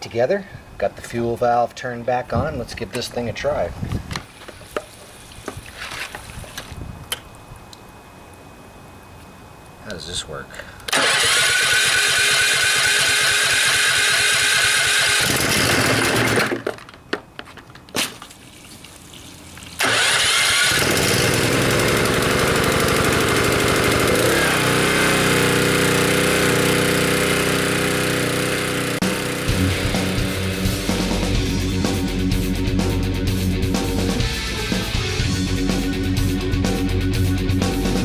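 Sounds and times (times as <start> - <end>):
electric starter cranking: 10.8 - 17.0, 19.7 - 31.6
small engine running: 10.9 - 16.9, 19.8 - 31.7.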